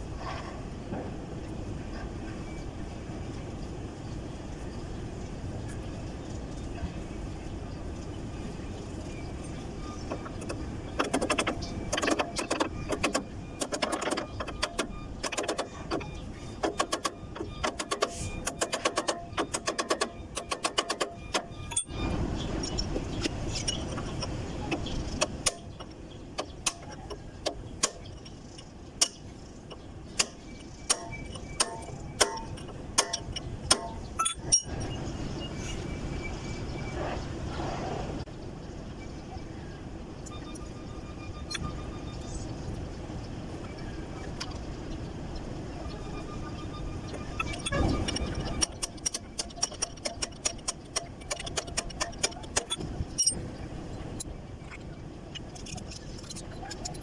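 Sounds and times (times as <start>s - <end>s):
metal tools clinking and tapping: 29.0s - 34.8s.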